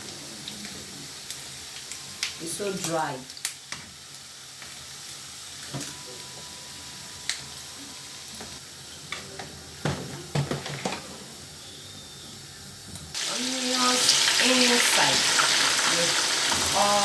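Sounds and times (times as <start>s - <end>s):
meat sizzling in hot oil: 0.0s - 5.9s, 13.1s - 17.0s.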